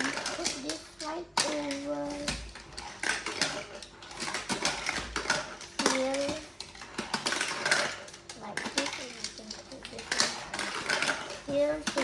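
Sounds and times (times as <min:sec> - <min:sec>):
child speaking: 0:00.0 - 0:02.4, 0:05.8 - 0:06.6, 0:08.4 - 0:10.4, 0:11.4 - 0:12.0
plastic tiles clicking and clacking: 0:00.0 - 0:12.0.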